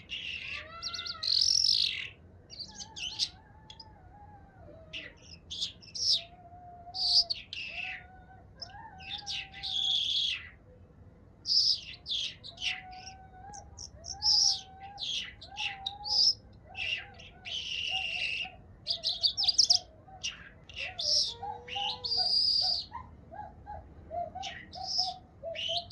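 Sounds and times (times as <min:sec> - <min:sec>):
songbird chirping and trilling: 0:00.0 - 0:25.9.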